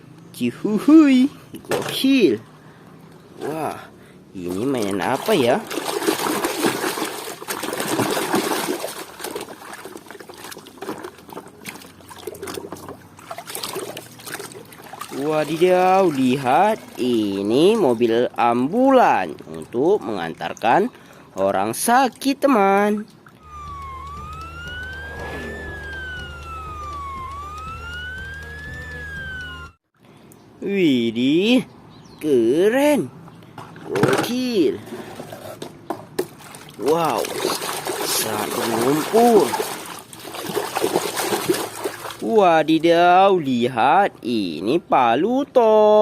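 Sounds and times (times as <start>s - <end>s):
water trickling and splashing: 4.4s - 23.9s, 36.2s - 42.4s
ambulance siren wailing: 23.4s - 29.8s
steady low hum: 23.5s - 29.8s.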